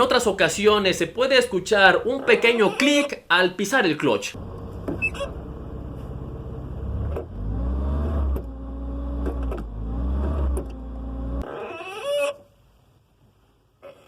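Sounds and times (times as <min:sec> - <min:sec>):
car engine running: 0:04.4 - 0:11.4
brief squeal: 0:05.0 - 0:05.3.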